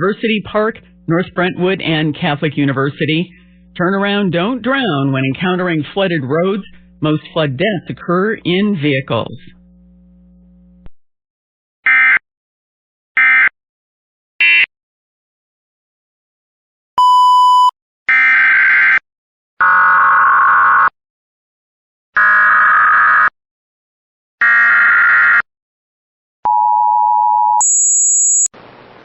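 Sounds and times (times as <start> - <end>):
two-tone attention signal: 26.5 - 28.5.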